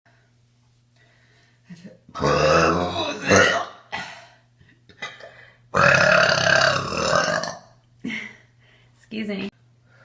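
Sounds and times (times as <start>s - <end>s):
woman burping loudly: 2.2s - 4.2s, 5.0s - 7.8s.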